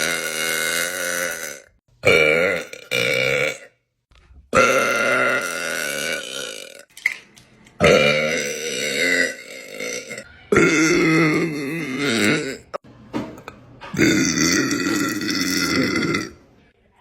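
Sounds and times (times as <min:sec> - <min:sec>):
woman burping: 0:00.0 - 0:03.8, 0:04.5 - 0:06.8, 0:07.8 - 0:12.8, 0:14.0 - 0:16.4.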